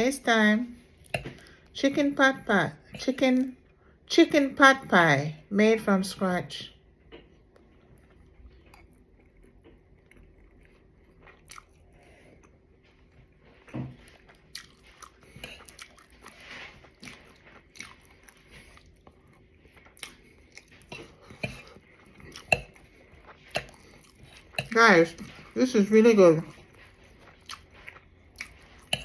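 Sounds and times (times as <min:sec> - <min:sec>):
person chewing crunchy pastry: 0:06.8 - 0:25.6, 0:26.4 - 0:29.0.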